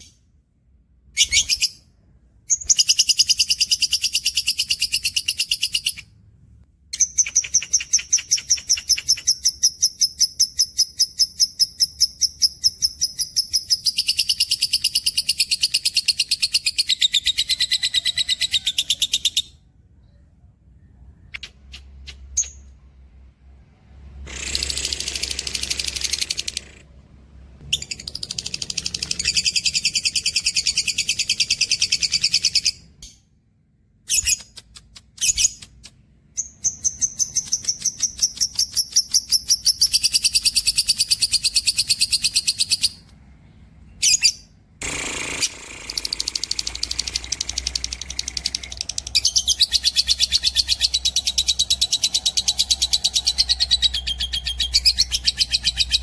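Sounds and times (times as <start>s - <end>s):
cage birds trilling: 27.6s - 33.0s, 45.2s - 56.0s.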